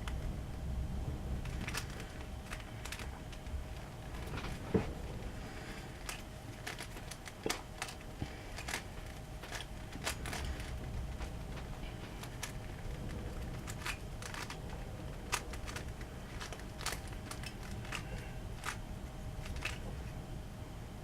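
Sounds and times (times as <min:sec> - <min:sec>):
plastic puzzle cube clicking: 0:12.2 - 0:18.8, 0:19.4 - 0:19.9.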